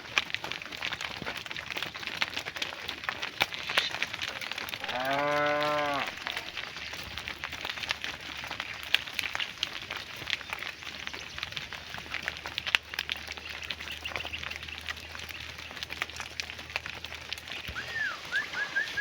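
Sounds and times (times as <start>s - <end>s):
scattered clicks and crackles: 0.0s - 19.0s
cow mooing: 4.8s - 6.6s.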